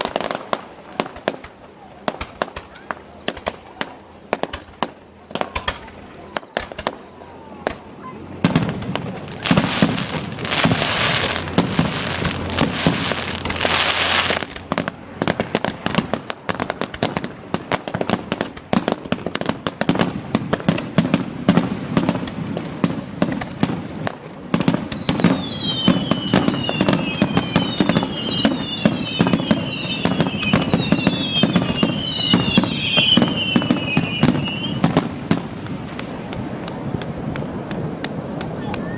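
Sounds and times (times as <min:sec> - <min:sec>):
firework shells bursting: 0:00.0 - 0:38.9
hissing crackle: 0:00.0 - 0:38.9
shrill falling whistles: 0:24.8 - 0:34.8.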